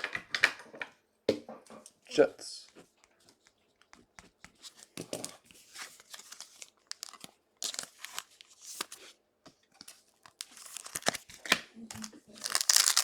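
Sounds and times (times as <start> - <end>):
crinkling wrappers: 4.7 - 9.1, 9.8 - 13.0.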